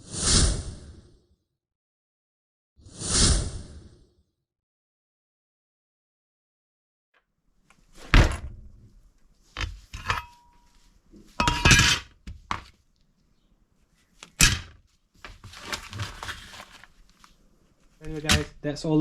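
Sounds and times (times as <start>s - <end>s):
hard parts knocking on workbench: 18.1s - 18.6s.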